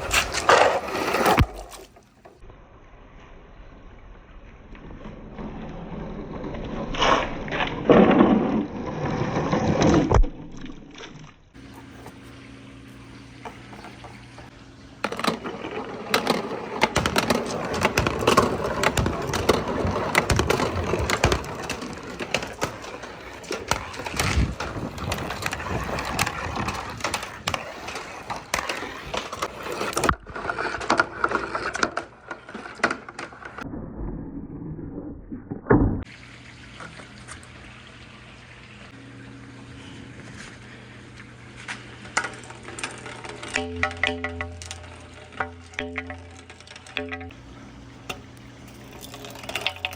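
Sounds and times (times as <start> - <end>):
marbles rolling and clattering on tracks: 13.4 - 33.7, 48.1 - 49.9.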